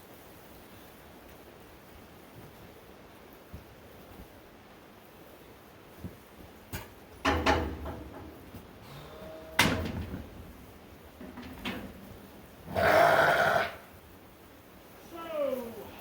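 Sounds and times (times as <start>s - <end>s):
metal rattle: 6.8s - 8.8s, 9.5s - 12.8s
metal equipment clanking: 7.2s - 8.6s, 9.5s - 12.7s.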